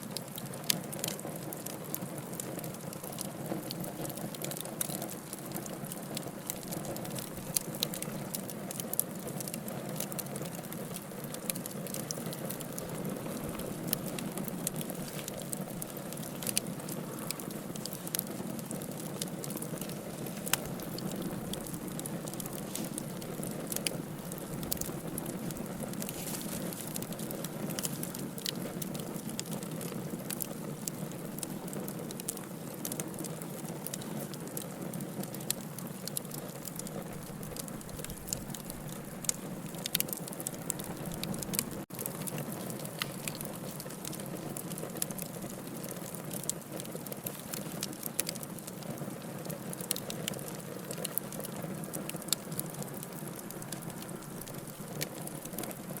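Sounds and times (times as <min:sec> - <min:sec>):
fire crackles and pops: 0:00.0 - 0:56.0
hiss of flames: 0:10.9 - 0:31.7.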